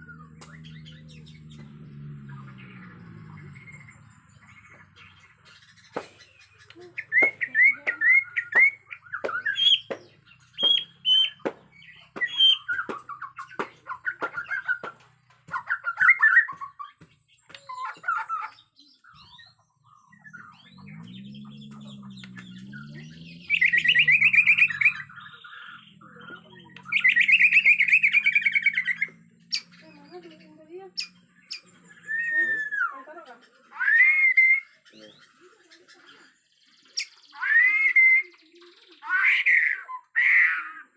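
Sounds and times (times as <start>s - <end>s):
bird singing whistled phrases: 5.7s - 14.9s, 15.6s - 16.9s, 17.5s - 30.2s, 31.0s - 36.0s, 36.6s - 40.7s.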